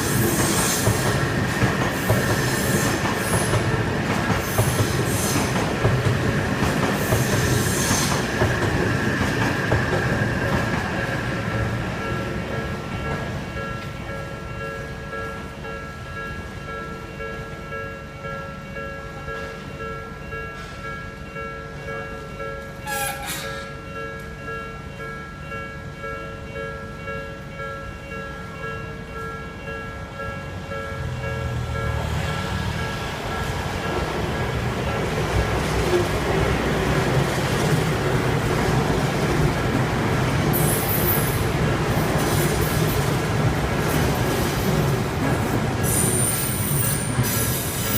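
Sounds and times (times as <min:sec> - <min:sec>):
train hissing burst: 0:00.0 - 0:01.2, 0:02.0 - 0:03.6, 0:04.4 - 0:05.6, 0:07.0 - 0:08.3, 0:22.8 - 0:23.7, 0:45.8 - 0:47.9
railroad crossing bell ringing: 0:00.0 - 0:47.9
train rumbling: 0:00.0 - 0:47.9.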